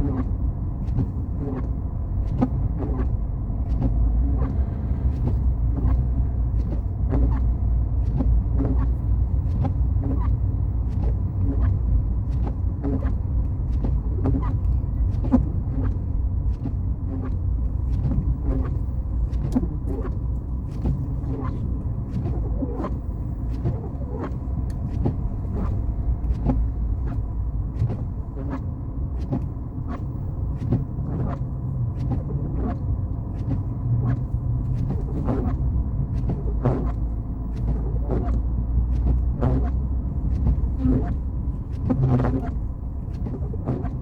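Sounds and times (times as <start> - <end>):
car engine and road noise: 0.0 - 44.0.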